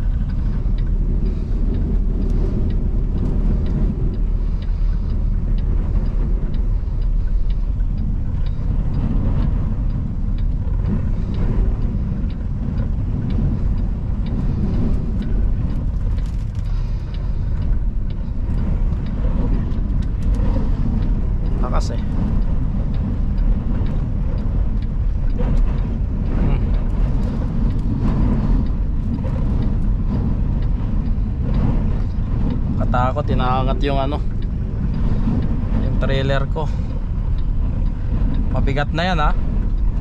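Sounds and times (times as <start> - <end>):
truck cab rumble: 0.0 - 40.0
wind buffeting truck: 0.0 - 40.0.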